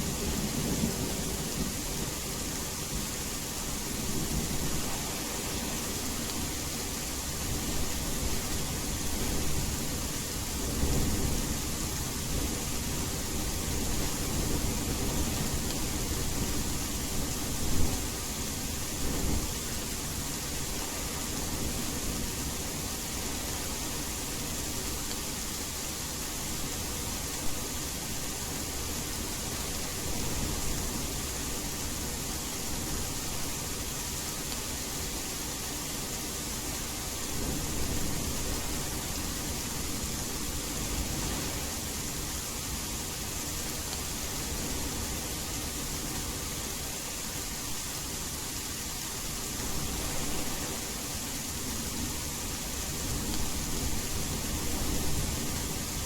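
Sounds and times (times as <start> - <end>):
rain hiss: 0.0 - 56.0.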